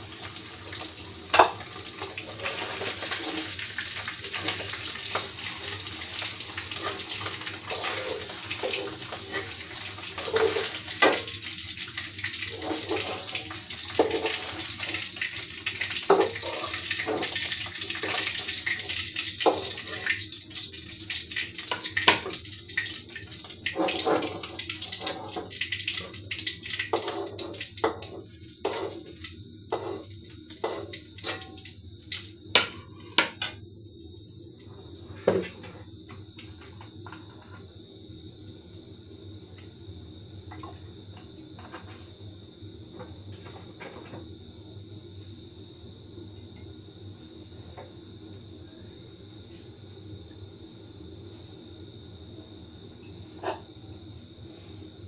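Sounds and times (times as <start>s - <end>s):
oil popping and crackling: 0.0s - 29.4s
fish sizzling in hot oil: 0.0s - 37.4s.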